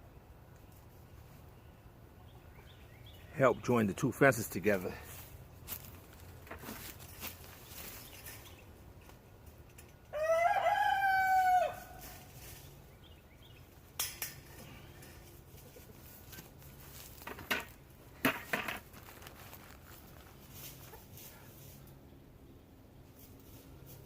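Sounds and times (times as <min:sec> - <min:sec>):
rooster crowing: 0:10.1 - 0:12.3.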